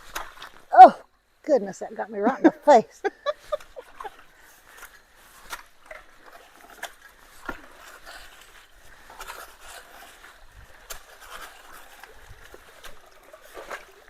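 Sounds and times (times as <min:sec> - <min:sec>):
water splashing: 0:00.0 - 0:01.0, 0:01.8 - 0:14.0
running water: 0:00.0 - 0:14.0.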